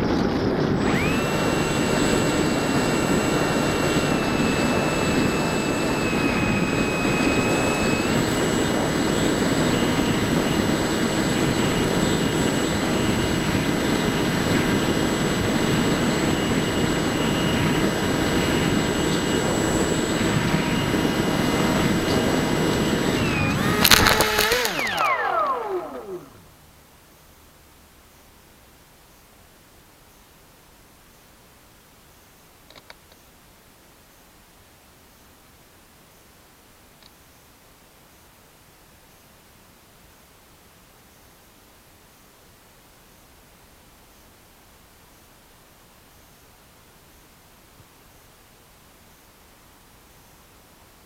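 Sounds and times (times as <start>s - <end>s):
electric motor and propeller whine: 0.0s - 26.8s.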